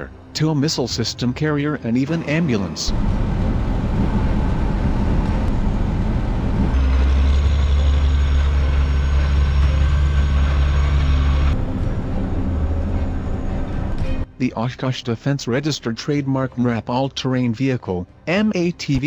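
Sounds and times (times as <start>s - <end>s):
heavy vehicle engine running: 2.1s - 14.3s.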